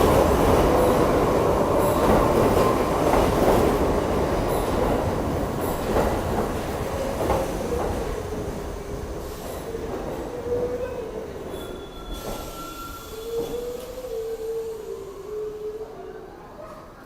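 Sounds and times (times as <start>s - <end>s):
subway train rumble: 0.0s - 17.0s
train wheels squealing on rails: 10.4s - 16.0s.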